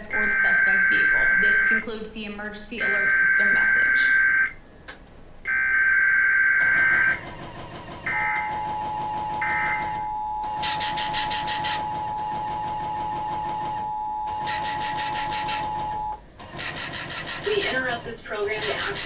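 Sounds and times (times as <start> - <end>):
two-tone attention signal: 0.0 - 1.9, 2.8 - 4.6, 6.6 - 7.2, 8.1 - 16.2
buzzy data bursts: 14.2 - 19.0.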